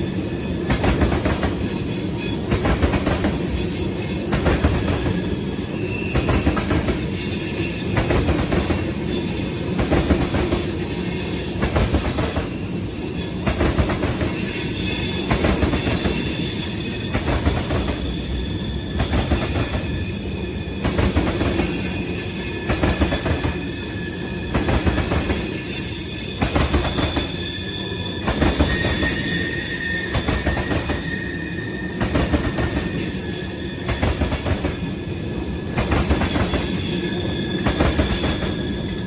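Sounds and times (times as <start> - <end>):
train wheels clattering: 0.0 - 39.0
high squealing tones: 14.0 - 39.0.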